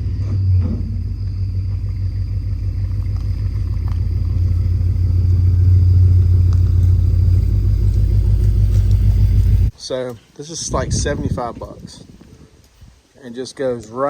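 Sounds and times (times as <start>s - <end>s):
pickup engine idling: 0.0s - 9.7s.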